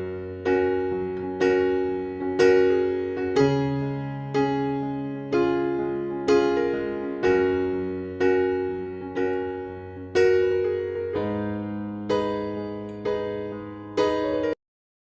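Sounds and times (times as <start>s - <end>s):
electric piano playing slow chords: 0.0s - 14.6s.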